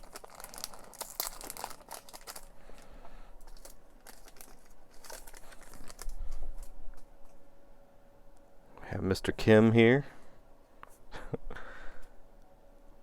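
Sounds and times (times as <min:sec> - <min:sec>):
trading cards rustling and clicking: 0:03.4 - 0:07.4.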